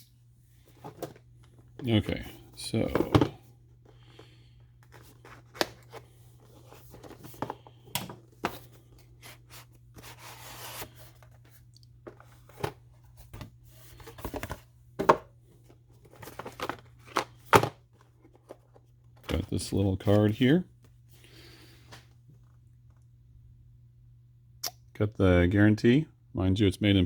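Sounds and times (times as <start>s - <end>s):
packaging clicks and rustles: 2.7s - 14.6s, 15.9s - 20.4s.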